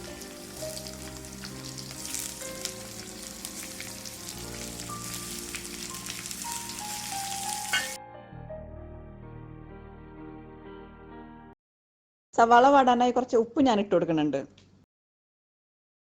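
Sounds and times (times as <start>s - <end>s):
onions sizzling in oil: 0.0s - 8.0s
background music: 0.0s - 11.6s.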